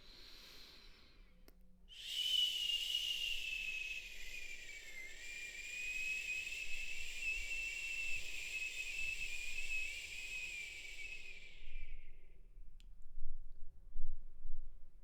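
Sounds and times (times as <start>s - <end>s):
high whistled note: 1.9s - 12.2s.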